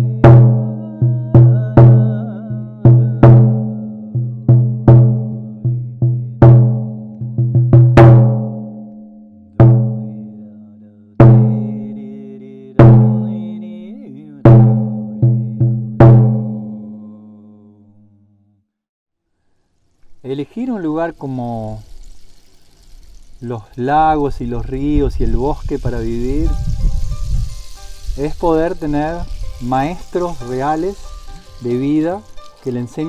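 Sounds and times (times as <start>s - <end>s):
low drum strokes ringing: 0.0s - 10.4s, 11.2s - 12.1s, 12.8s - 13.6s, 14.4s - 16.9s, 23.8s - 33.0s.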